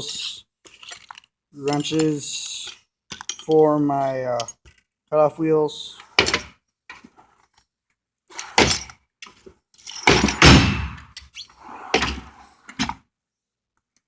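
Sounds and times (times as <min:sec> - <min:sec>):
tools rattling in drawers: 0:00.0 - 0:02.2, 0:09.8 - 0:10.6
steel drawers thudding shut: 0:08.5 - 0:08.9, 0:10.0 - 0:11.0.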